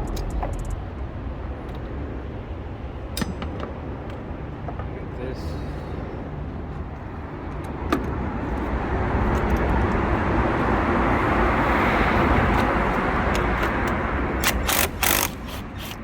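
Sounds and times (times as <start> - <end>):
sharp clicks: 0.0 - 0.8, 13.3 - 16.0
vehicle passing by: 5.4 - 14.5.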